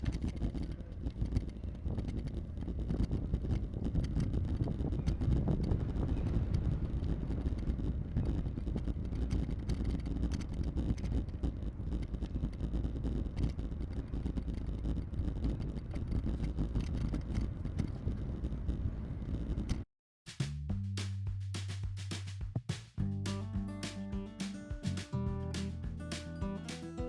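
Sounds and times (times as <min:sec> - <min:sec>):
bicycle rolling rumble: 0:00.0 - 0:19.8
wind noise on microphone: 0:00.0 - 0:19.9.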